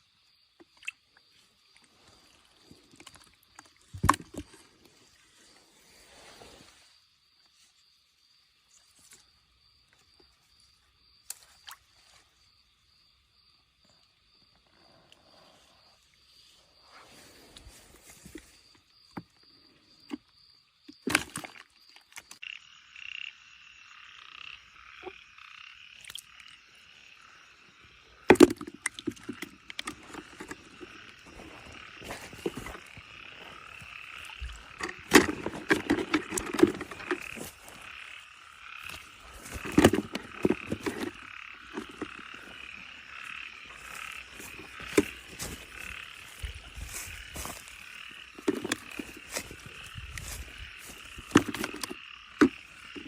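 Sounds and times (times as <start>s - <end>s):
frogs croaking: 0.0s - 53.0s
handling knocks and rustles: 34.4s - 37.6s, 39.2s - 42.2s, 51.2s - 52.6s.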